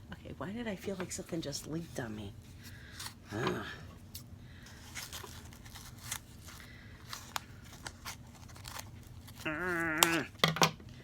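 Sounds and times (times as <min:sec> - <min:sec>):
packaging being handled: 0:04.7 - 0:10.4.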